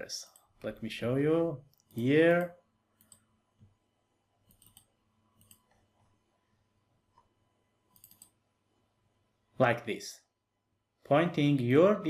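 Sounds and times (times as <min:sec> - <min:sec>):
faint computer clicks: 0:04.5 - 0:05.8, 0:07.9 - 0:08.4.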